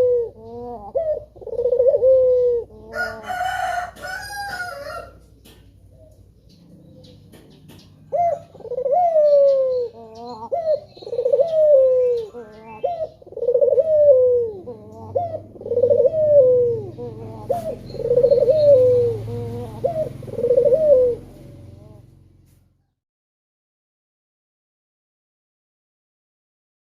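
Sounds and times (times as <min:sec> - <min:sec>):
dove cooing: 0:00.0 - 0:22.9.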